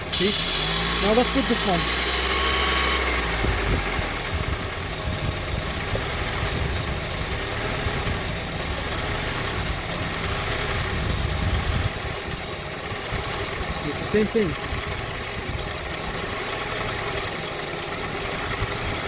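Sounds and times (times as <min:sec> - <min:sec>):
air intake hiss: 0:00.0 - 0:03.0
car engine rough idle: 0:00.0 - 0:19.0.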